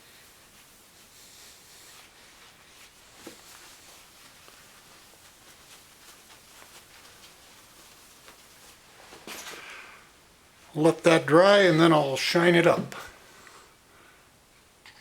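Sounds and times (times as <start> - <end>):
cloth rubbing plastic: 0.0 - 9.7.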